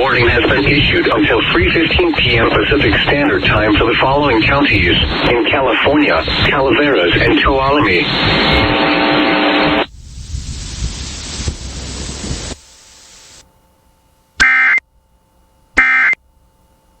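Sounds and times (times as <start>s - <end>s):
static hiss: 0.0s - 13.5s.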